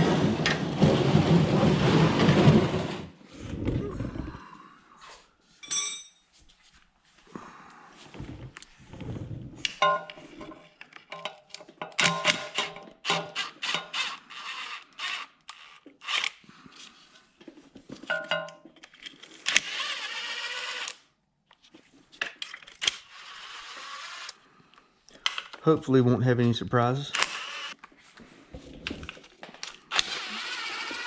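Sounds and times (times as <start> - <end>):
metal tools clinking: 5.6 - 6.3, 9.8 - 13.0, 18.1 - 18.7.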